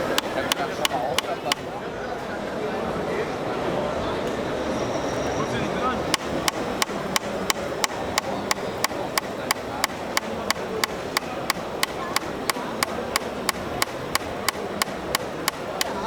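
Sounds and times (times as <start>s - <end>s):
sharp mechanical clicks: 0.0s - 1.7s, 6.1s - 16.0s
murmur of hall background noise: 0.0s - 16.0s.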